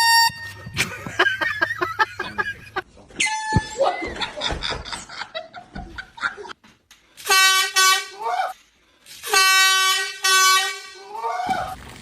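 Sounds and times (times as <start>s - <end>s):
air horn blasting: 0.0s - 0.8s, 7.2s - 8.2s, 9.2s - 11.1s.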